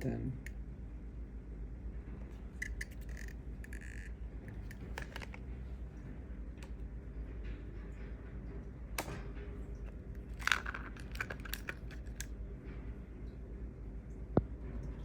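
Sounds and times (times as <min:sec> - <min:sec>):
steady low hum: 0:00.0 - 0:15.0
small clicks and squeaks of handling: 0:02.3 - 0:05.6, 0:09.8 - 0:12.4.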